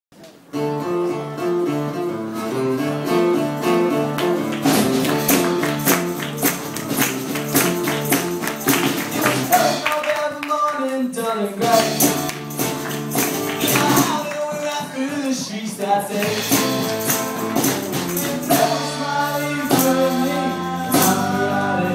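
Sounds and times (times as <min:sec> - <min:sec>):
plucked string riff: 0:00.5 - 0:09.9
percussion beat: 0:03.6 - 0:21.9.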